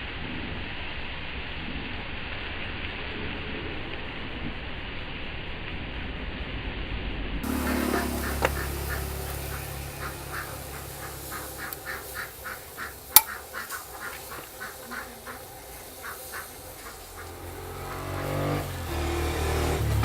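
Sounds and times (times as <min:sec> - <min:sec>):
short quacking calls: 0:07.5 - 0:18.2.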